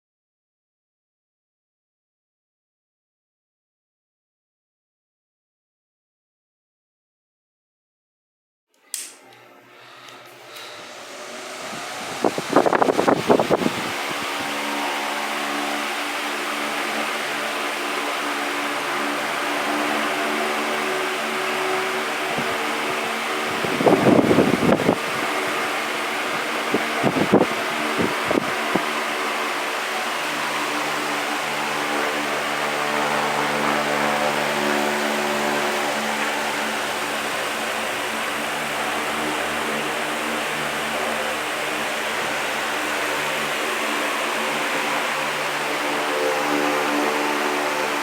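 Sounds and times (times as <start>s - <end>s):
electric fan running: 8.8s - 48.0s
switch click: 8.9s - 9.4s
low motor hum: 9.3s - 48.0s.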